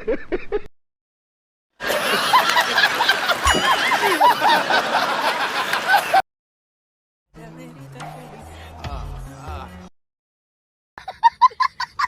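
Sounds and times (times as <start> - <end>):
high-pitched giggling laughter: 1.9 - 6.2, 11.0 - 12.0.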